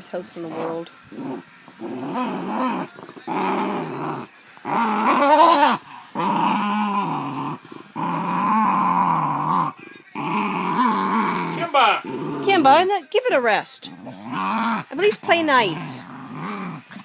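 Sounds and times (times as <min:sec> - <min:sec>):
dog growling: 0:00.4 - 0:12.9, 0:13.7 - 0:17.0.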